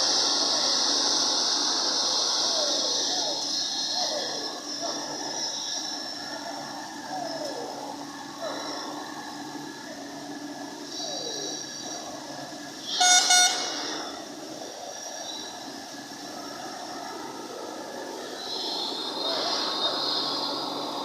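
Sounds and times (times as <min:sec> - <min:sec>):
vehicle horn toots: 0:12.9 - 0:14.2.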